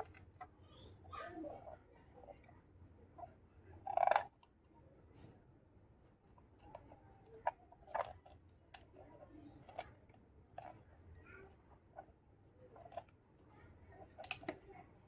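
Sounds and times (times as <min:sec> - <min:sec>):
plastic toy pieces handled: 0:06.6 - 0:08.9, 0:14.0 - 0:14.8.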